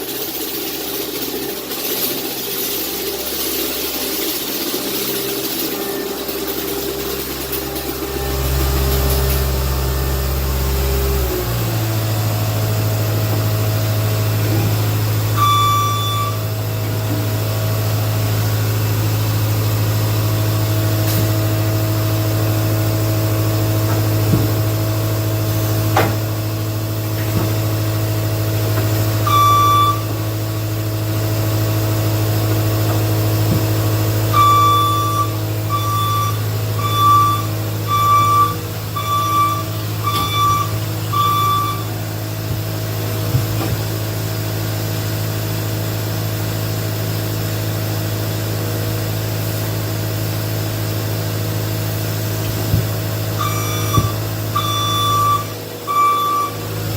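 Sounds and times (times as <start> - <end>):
skid steer engine running: 0.0 - 56.9
reversing alarm beeps: 15.4 - 16.5, 29.2 - 30.1, 34.3 - 42.0, 53.4 - 56.6.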